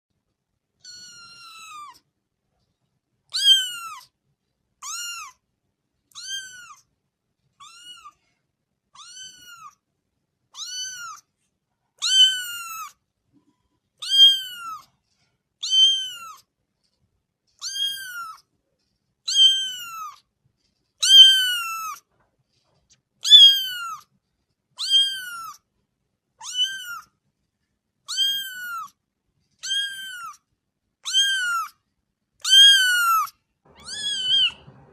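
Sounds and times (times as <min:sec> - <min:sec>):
kitten mewing: 0:03.3 - 0:04.1, 0:06.1 - 0:06.8, 0:07.6 - 0:08.2, 0:10.5 - 0:11.2, 0:26.4 - 0:27.1, 0:28.1 - 0:29.0, 0:31.0 - 0:31.8, 0:32.4 - 0:34.9.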